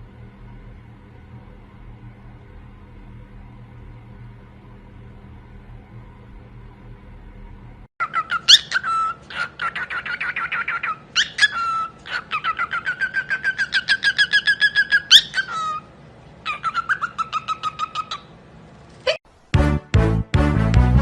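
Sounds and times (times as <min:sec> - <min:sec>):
parrot rapid repeated calls: 0:08.0 - 0:18.3
parrot sharp rising whistles: 0:08.1 - 0:15.9, 0:16.5 - 0:18.3.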